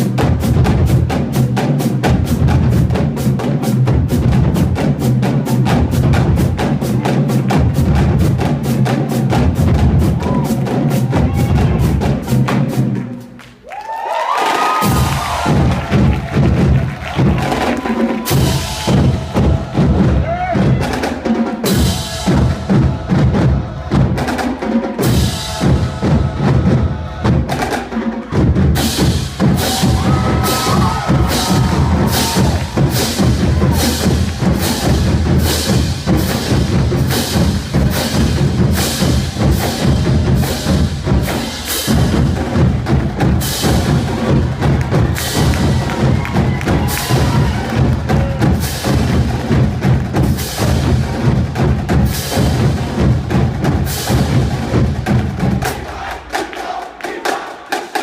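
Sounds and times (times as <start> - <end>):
drumline playing: 0.0 - 58.0
bass drum pulse: 28.4 - 41.3.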